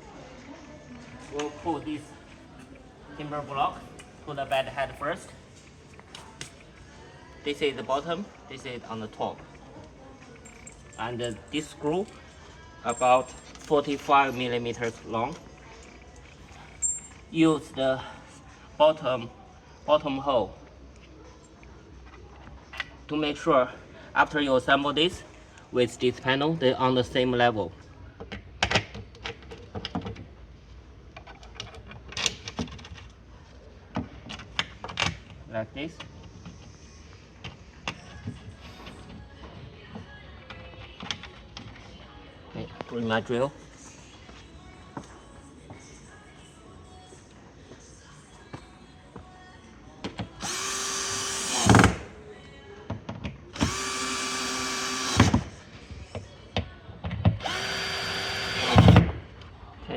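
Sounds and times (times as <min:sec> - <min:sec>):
cordless drill driving screws: 0:50.4 - 0:52.1, 0:53.6 - 0:55.6, 0:57.4 - 0:59.1.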